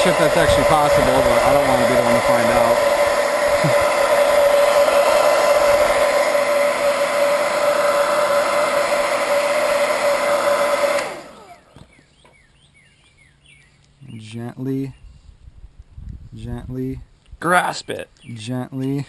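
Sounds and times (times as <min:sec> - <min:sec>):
blow dryer running: 0:00.0 - 0:11.9.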